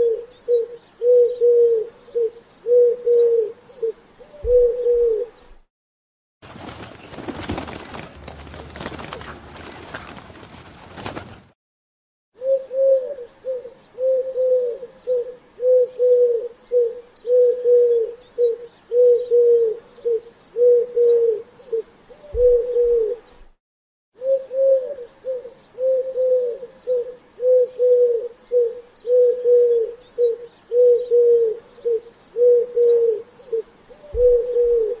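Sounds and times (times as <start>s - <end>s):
pigeon cooing: 0.0s - 5.6s, 12.4s - 23.3s, 24.2s - 35.0s.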